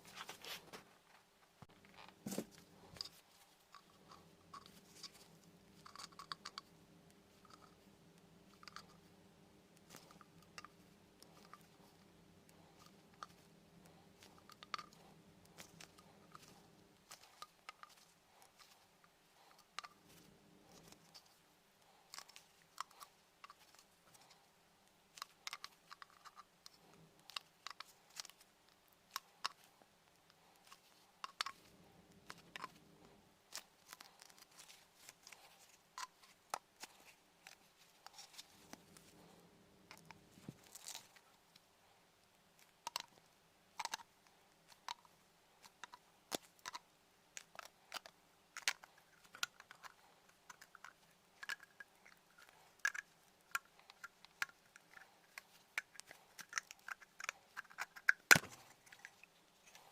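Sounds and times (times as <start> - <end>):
faint steady hum: 0.0 - 59.9
tool clicks taps and scrapes: 47.4 - 59.9.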